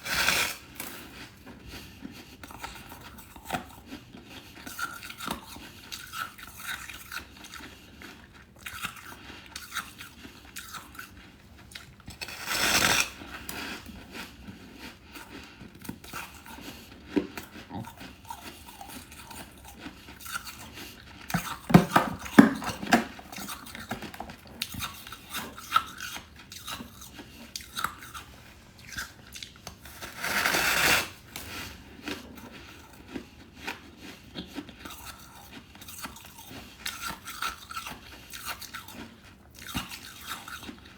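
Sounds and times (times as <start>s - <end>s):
biting and chewing frost: 0.0s - 40.9s.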